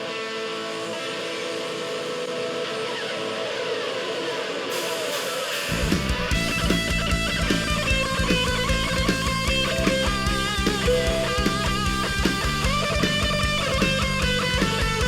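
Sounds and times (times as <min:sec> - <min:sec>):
drums: 0:00.0 - 0:15.0
electric guitar: 0:00.0 - 0:15.0
bass guitar: 0:05.7 - 0:15.0.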